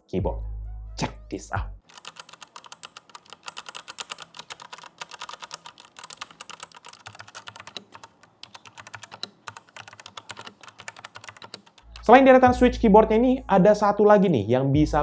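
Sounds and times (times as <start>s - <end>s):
mechanical keyboard typing: 1.8s - 12.6s.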